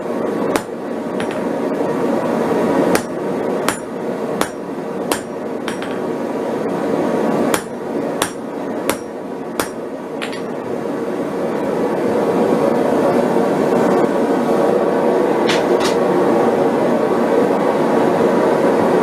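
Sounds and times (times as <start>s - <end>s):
hammer striking steel on anvil: 0.6s - 1.5s, 2.9s - 6.1s, 7.5s - 10.5s.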